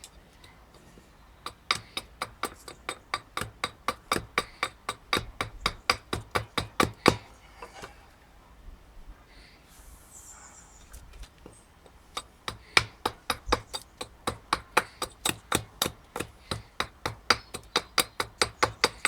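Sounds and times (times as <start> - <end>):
hatchet chopping wood: 1.4 - 7.8, 11.8 - 19.0.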